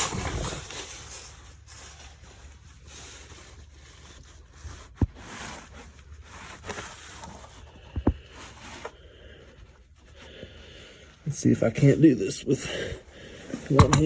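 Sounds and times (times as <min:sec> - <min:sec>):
sharp knocks: 0:13.7 - 0:14.0.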